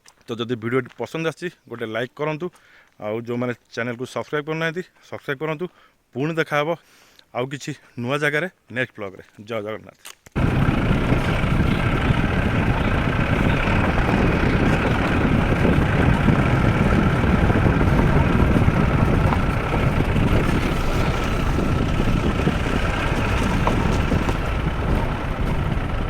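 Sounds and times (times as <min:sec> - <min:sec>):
faint steady whine: 0:10.4 - 0:26.0
vehicle engine and road rumble: 0:10.4 - 0:26.0.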